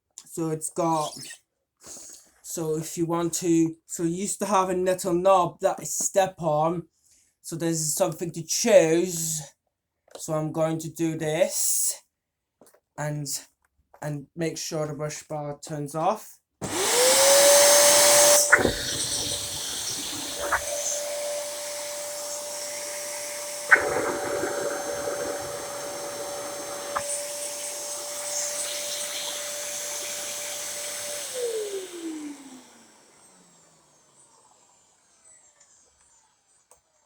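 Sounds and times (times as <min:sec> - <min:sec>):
vacuum cleaner running: 0:16.6 - 0:37.0
vacuum motor winding down: 0:16.6 - 0:37.0.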